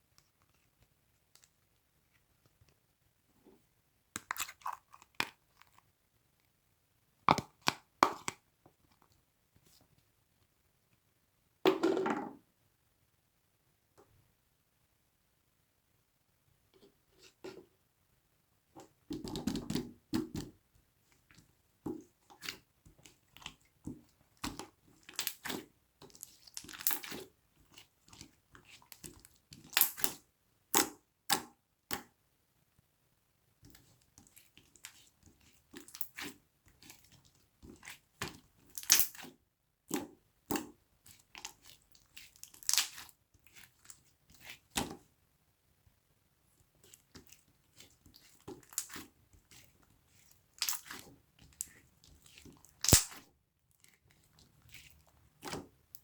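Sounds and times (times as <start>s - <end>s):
soft material crackling and squishing: 0.0s - 6.6s, 18.6s - 30.3s, 33.6s - 56.0s.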